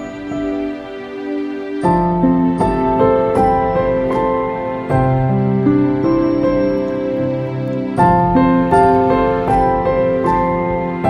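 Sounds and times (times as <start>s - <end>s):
instrumental background music: 0.0s - 11.0s.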